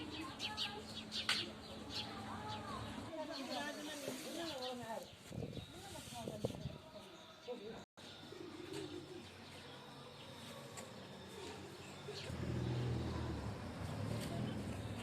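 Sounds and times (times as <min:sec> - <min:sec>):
faint outdoor background: 0:00.0 - 0:15.0
low engine rumble: 0:12.0 - 0:15.0.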